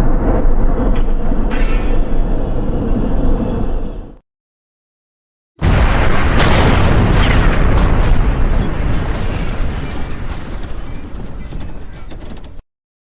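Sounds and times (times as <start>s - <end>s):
deep explosion blast: 5.6s - 11.9s
crackling debris: 5.6s - 12.6s.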